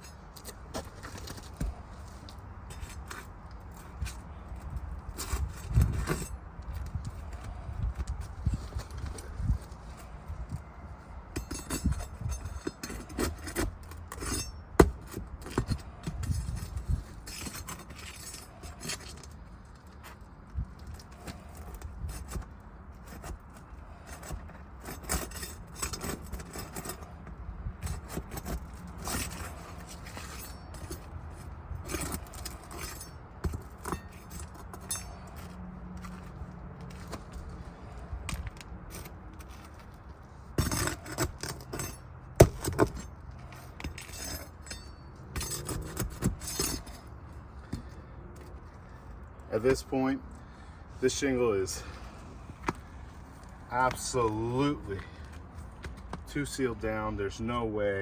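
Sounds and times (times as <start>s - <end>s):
hand tool scraping under shingles: 0.0s - 57.3s.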